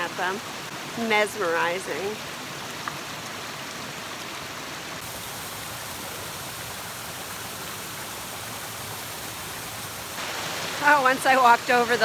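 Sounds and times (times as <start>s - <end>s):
waterfall rushing: 5.0s - 12.0s.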